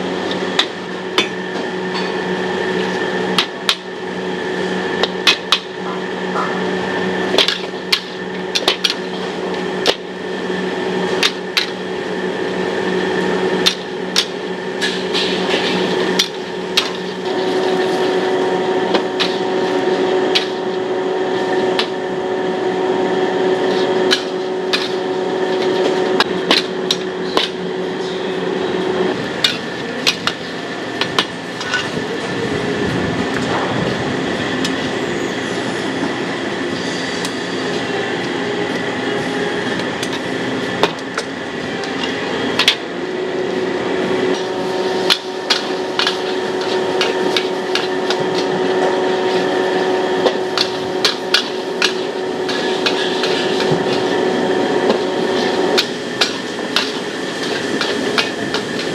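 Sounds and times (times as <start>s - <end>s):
steady hum: 0.0s - 58.9s
spatula striking and scraping wok: 44.8s - 58.9s.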